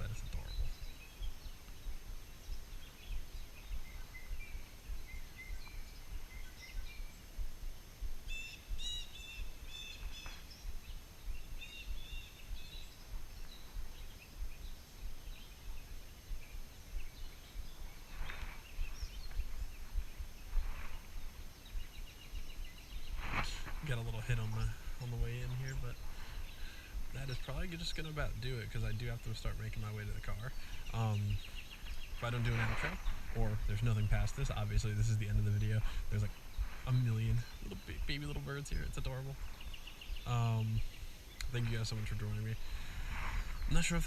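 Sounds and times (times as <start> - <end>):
young birds chirping: 0.0 - 7.5, 8.2 - 44.0
low steady rumble: 18.8 - 44.0.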